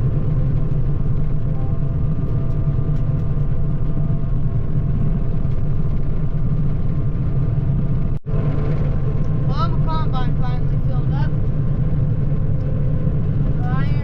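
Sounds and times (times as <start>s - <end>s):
faint engine whine: 0.0s - 14.0s
vehicle engine rumbling: 0.0s - 14.0s.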